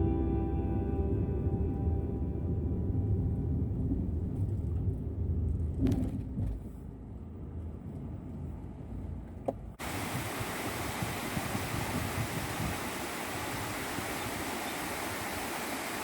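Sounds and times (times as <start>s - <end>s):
car rumbling on the move: 0.0s - 12.8s
steady rushing noise: 9.8s - 16.0s.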